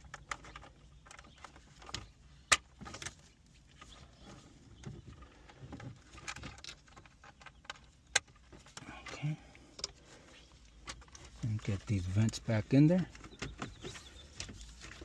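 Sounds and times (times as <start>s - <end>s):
plastic clicks and rattles: 0.0s - 3.2s, 4.8s - 10.0s.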